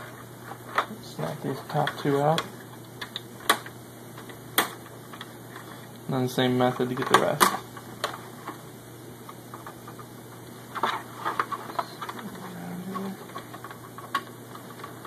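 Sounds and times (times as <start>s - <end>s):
plastic clips snapping: 2.9s - 5.3s.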